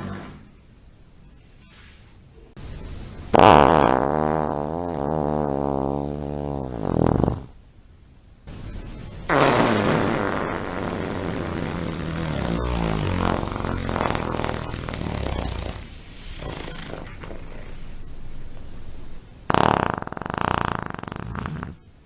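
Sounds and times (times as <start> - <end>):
honking fart sounds: 3.3 - 7.6, 9.3 - 17.6, 19.5 - 21.8.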